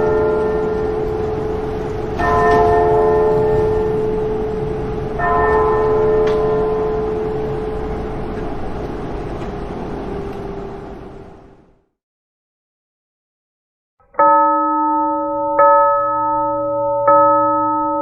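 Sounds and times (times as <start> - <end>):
bell ringing: 0.0 - 8.7, 14.1 - 18.0.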